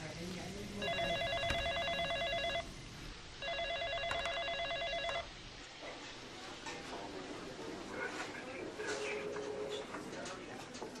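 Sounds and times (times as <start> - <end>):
telephone ringing with warbling trill: 0.8 - 2.7, 3.4 - 5.3.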